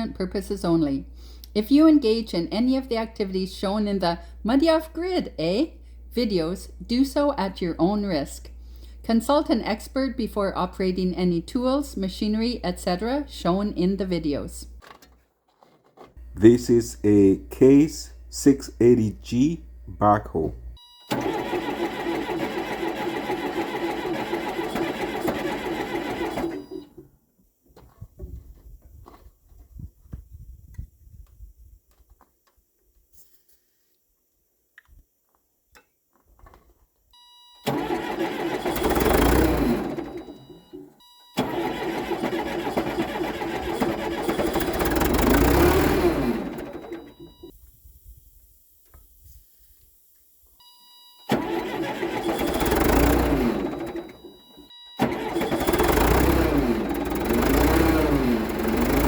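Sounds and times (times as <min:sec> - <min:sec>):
engine cranking: 0:21.0 - 0:27.0, 0:37.6 - 0:47.5, 0:51.3 - 0:59.0
diesel engine running: 0:21.1 - 0:26.8, 0:37.7 - 0:40.8, 0:41.4 - 0:47.5, 0:51.3 - 0:59.0.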